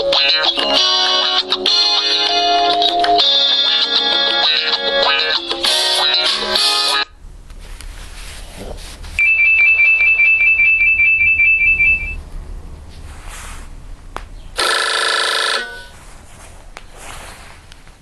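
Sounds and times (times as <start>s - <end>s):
fast high electronic beeping: 9.2s - 12.2s
fuller ringtone: 9.2s - 12.2s, 14.6s - 16.0s.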